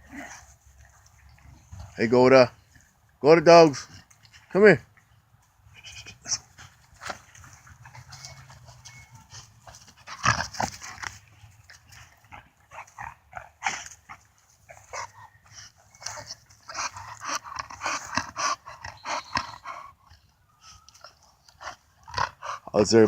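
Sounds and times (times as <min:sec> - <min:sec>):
dogs whining and yipping: 0:07.4 - 0:14.0, 0:14.7 - 0:22.6.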